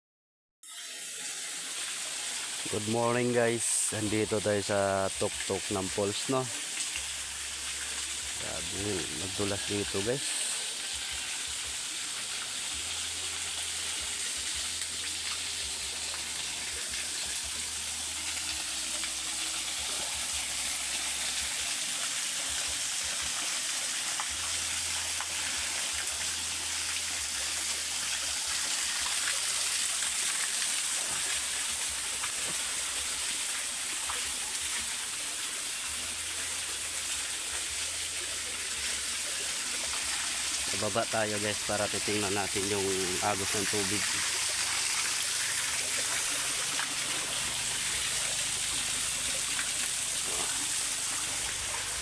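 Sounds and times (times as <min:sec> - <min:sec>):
waterfall rushing: 0:07.6 - 0:10.8, 0:38.5 - 0:52.0.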